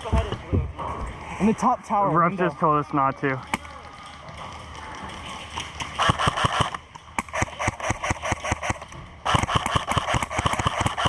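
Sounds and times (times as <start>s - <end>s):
airsoft guns firing: 5.8s - 11.0s.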